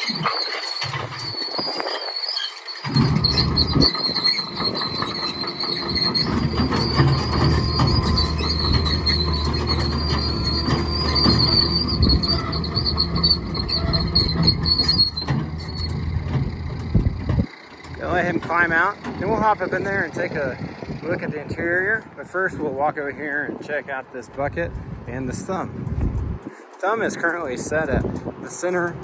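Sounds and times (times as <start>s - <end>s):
metallic track squeal: 0.0s - 22.0s
excavator diesel engine under load: 2.6s - 29.0s.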